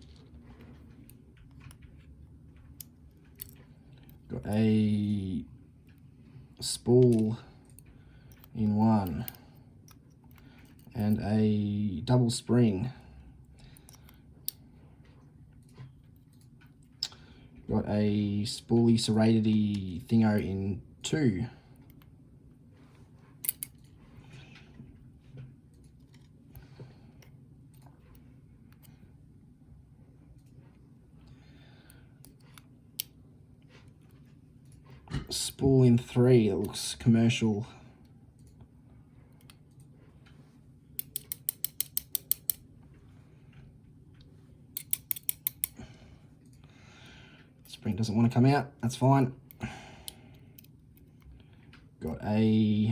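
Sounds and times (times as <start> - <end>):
lock pins clicking and scraping: 0.0 - 4.6, 23.4 - 24.0, 41.0 - 42.6, 44.8 - 45.8
sharp metal clicks: 23.4 - 23.8, 41.0 - 42.6, 44.8 - 45.8.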